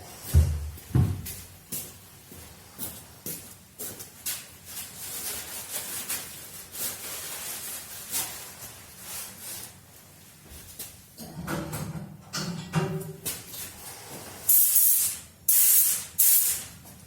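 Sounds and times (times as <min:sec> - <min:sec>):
paint spray gun hissing: 0:14.5 - 0:16.7.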